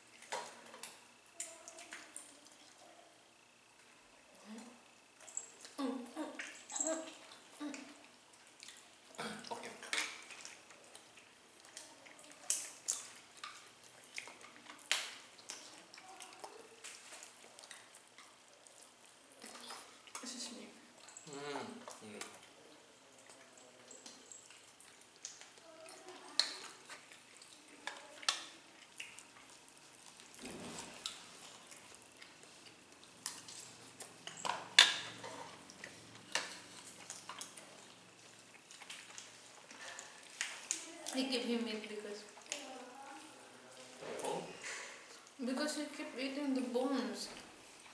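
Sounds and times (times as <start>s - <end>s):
wet chewing with smacks: 4.6s - 45.4s
eating crunchy chicken: 5.5s - 40.9s.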